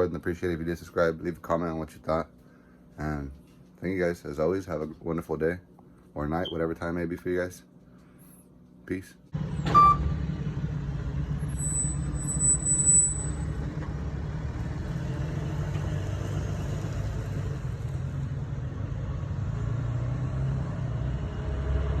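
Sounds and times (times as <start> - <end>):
car engine rumbling: 9.4 - 22.0.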